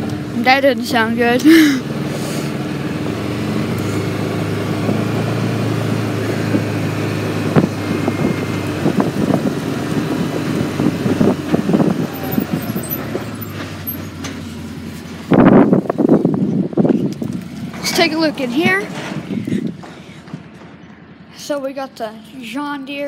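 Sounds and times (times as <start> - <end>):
vehicle engine running: 0.0 - 23.0
knocks and rattles: 11.1 - 21.3.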